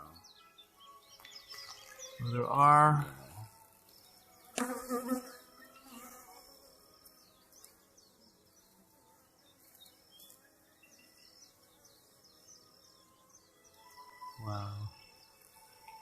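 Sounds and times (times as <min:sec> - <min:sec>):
hum of bee colony: 0:00.0 - 0:16.0
bee buzzing close by: 0:03.2 - 0:14.0, 0:14.8 - 0:16.0.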